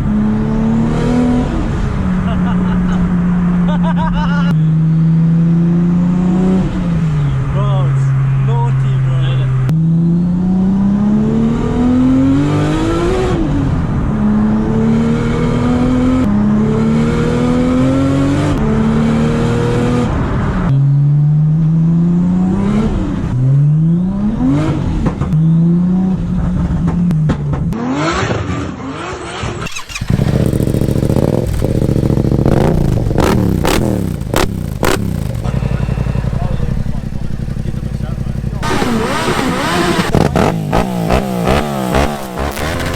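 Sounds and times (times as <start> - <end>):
car engine accelerating through gears: 0.0 - 8.4, 9.5 - 42.9
steady engine rumble: 0.0 - 12.2, 29.7 - 42.9.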